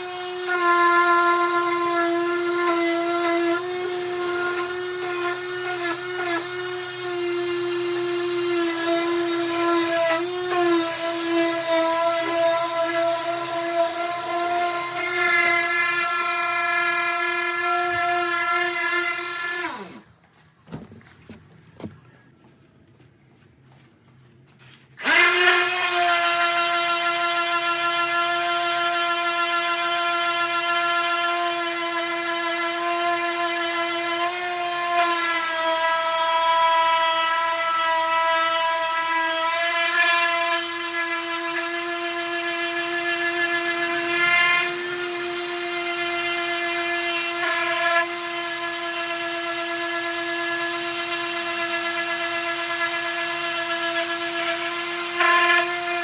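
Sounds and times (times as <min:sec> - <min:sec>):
electric sander whining: 0:00.0 - 0:20.1, 0:25.0 - 0:29.9
handling knocks: 0:20.6 - 0:22.3.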